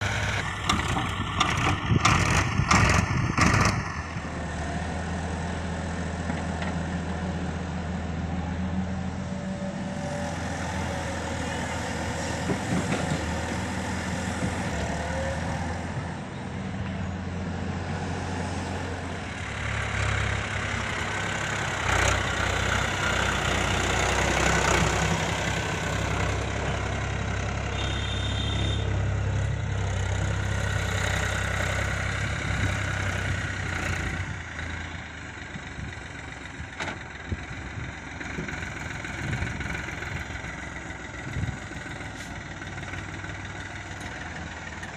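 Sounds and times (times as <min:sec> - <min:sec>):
diesel engine running: 0:00.0 - 0:44.9
short high beep: 0:27.8 - 0:28.8.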